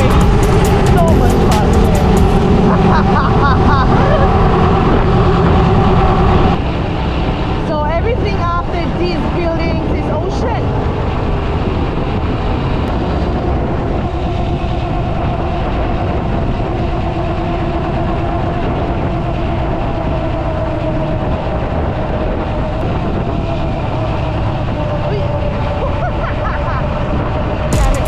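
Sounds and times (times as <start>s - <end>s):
motorcycle engine running: 0.0s - 6.8s, 27.7s - 28.0s
wind on microphone: 0.0s - 28.0s.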